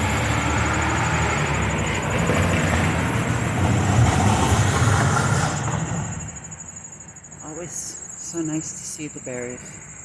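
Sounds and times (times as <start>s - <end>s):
passing vehicle rumble: 0.0s - 6.7s.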